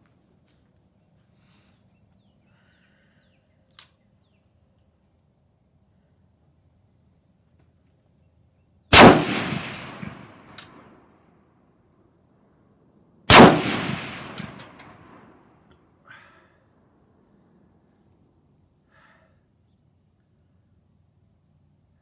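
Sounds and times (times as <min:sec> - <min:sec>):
faint clicks: 0:03.6 - 0:04.1
echoing rifle shots: 0:08.9 - 0:11.0, 0:13.3 - 0:15.3.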